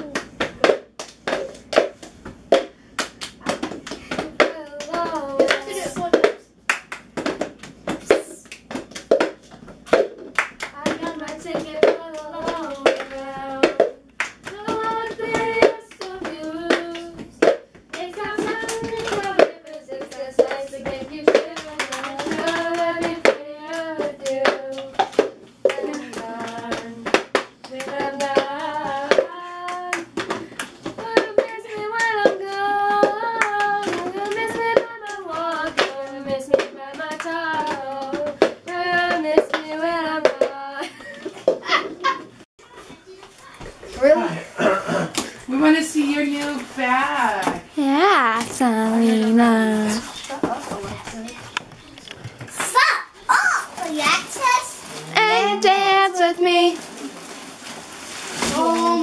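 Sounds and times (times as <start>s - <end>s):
sharp hand claps: 0.0s - 10.8s
child singing: 47.8s - 50.1s, 55.0s - 56.8s, 58.4s - 59.0s.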